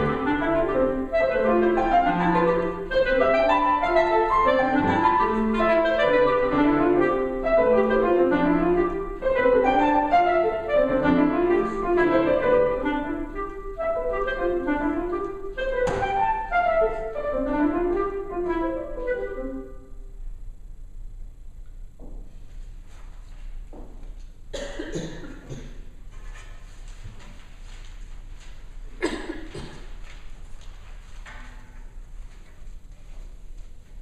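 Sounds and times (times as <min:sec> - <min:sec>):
clarinet: 0:00.0 - 0:20.0
piano: 0:00.0 - 0:20.2.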